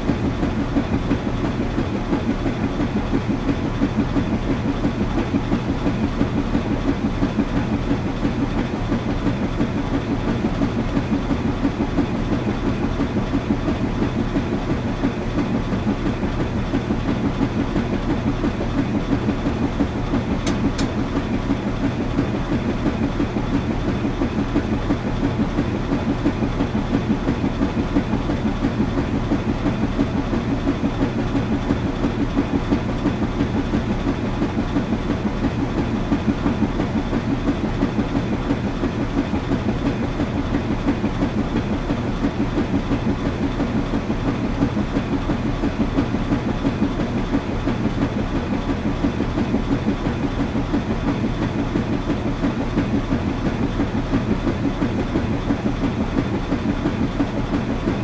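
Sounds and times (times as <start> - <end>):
washing machine running: 0.0 - 58.0.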